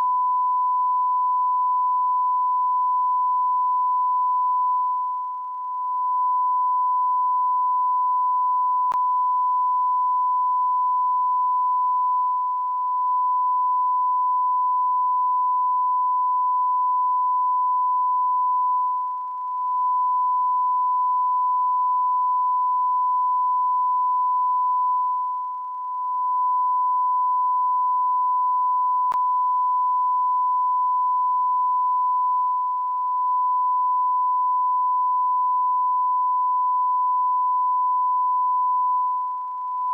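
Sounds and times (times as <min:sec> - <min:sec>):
continuous high-pitched beep: 0:04.5 - 0:07.7, 0:11.6 - 0:13.7, 0:18.3 - 0:23.1, 0:23.7 - 0:29.5, 0:31.8 - 0:34.9, 0:35.6 - 0:39.9.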